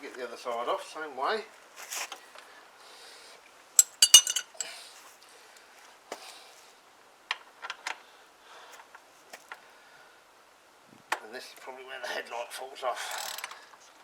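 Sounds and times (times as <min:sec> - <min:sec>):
light metal taps: 0:03.8 - 0:04.7
metal tools clinking: 0:03.8 - 0:04.7.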